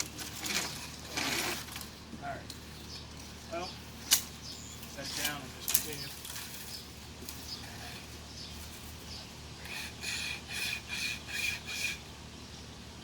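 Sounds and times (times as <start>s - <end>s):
wire saw cutting branch: 9.6s - 12.0s.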